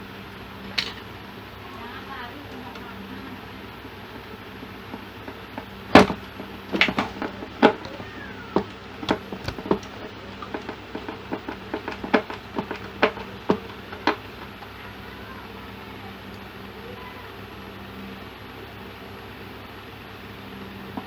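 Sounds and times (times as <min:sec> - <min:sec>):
faint steady hum: 0:00.0 - 0:21.0
hard objects clicking and knocking: 0:00.7 - 0:01.1, 0:03.8 - 0:14.8.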